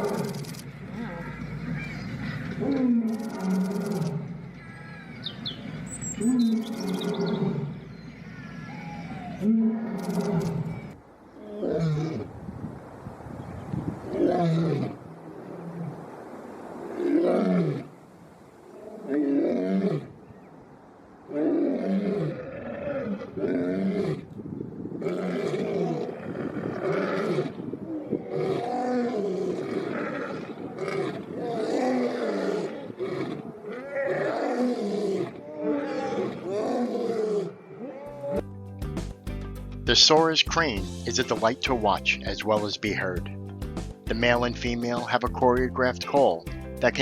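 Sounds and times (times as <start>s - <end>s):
lion roaring and grunting: 0.0s - 4.4s, 6.2s - 7.8s, 8.4s - 12.4s, 14.1s - 16.0s, 18.8s - 20.2s, 21.3s - 24.4s, 25.0s - 38.5s.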